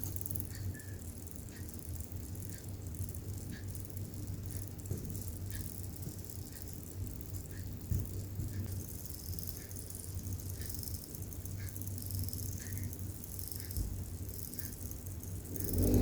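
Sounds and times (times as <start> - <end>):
low hum: 15.4 - 16.0.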